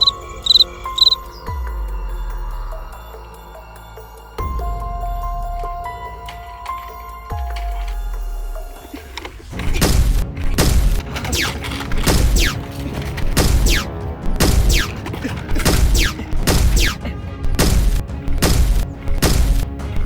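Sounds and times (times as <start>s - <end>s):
action movie soundtrack music: 0.0s - 20.0s
sharp hits: 13.3s - 20.0s
heavy bass beat pounding: 15.6s - 19.9s.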